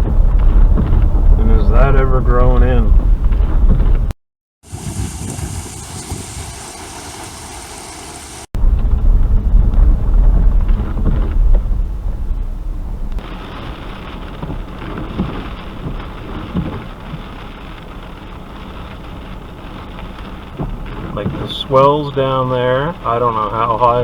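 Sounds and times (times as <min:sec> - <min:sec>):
wind buffeting microphone: 0:00.0 - 0:07.6, 0:08.5 - 0:21.5
storm surf and waves: 0:04.6 - 0:17.0.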